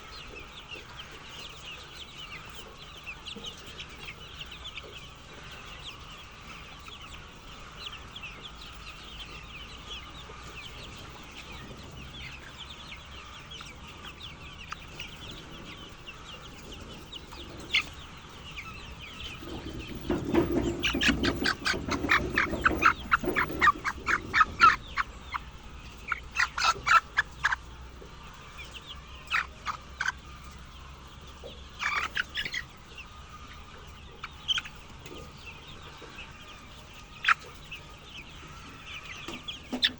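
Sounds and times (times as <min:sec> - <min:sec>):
chickens clucking and chirping: 0:00.0 - 0:39.9
chicken loud rapid clucks: 0:00.2 - 0:39.9.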